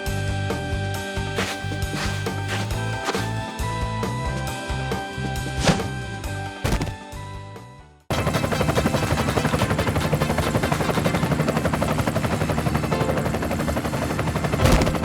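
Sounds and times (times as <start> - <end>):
helicopter rotor chopping: 1.2 - 3.6, 8.1 - 15.0.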